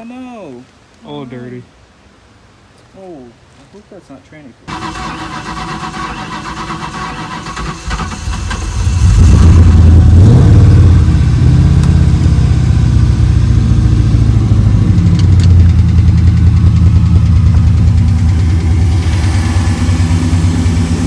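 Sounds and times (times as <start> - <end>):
car engine starting and idling: 4.7 - 21.0
engine lifter tick: 11.0 - 12.8, 14.7 - 19.3.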